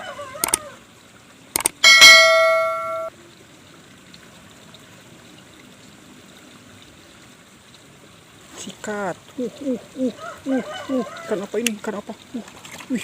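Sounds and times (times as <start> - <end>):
bright metallic ding: 1.8 - 3.1.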